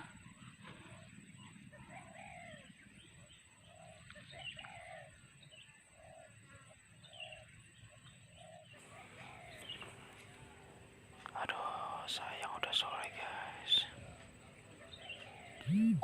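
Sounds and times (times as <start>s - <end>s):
faint high bird chirps: 14.8s - 16.0s
pigeon cooing: 14.8s - 16.0s.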